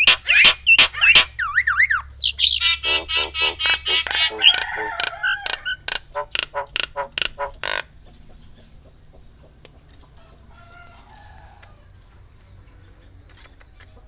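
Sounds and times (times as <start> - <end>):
myna bird calling harsh notes: 0.0 - 8.0.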